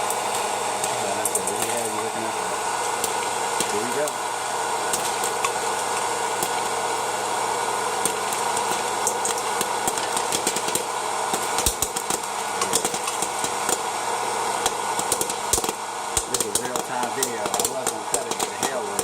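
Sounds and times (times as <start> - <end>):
popcorn kernels popping: 0.0 - 19.0
popcorn popper fan whir: 0.0 - 19.0.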